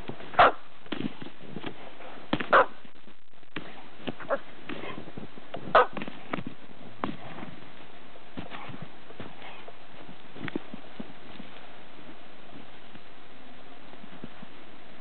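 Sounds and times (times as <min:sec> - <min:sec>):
dog barking: 0:00.4 - 0:00.6, 0:02.5 - 0:02.8, 0:05.8 - 0:06.0.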